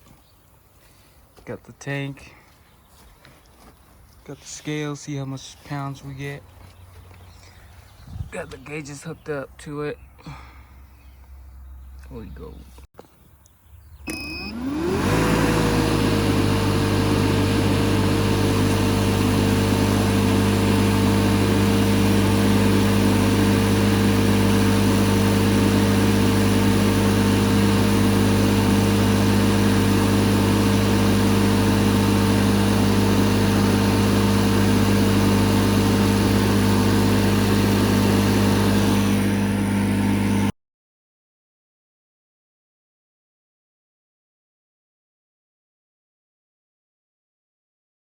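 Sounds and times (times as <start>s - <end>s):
machine motor humming and whining: 14.1s - 40.5s.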